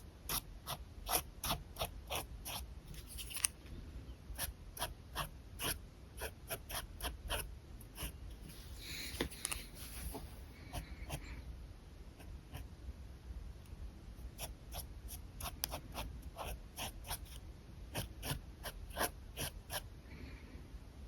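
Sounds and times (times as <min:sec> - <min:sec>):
pen scratching on paper: 0:00.3 - 0:02.6, 0:04.4 - 0:11.2, 0:14.3 - 0:19.9.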